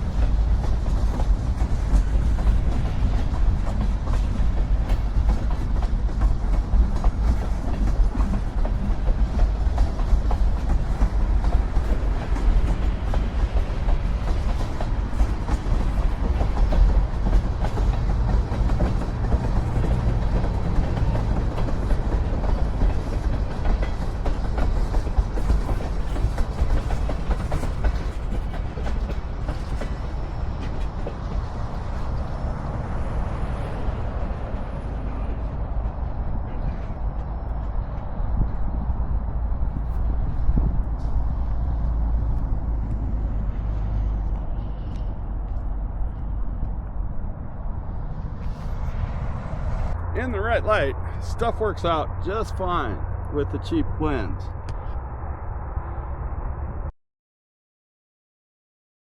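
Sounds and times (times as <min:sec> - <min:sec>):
wheels clicking over rails: 0:00.0 - 0:32.9
train rumbling past: 0:00.0 - 0:56.9.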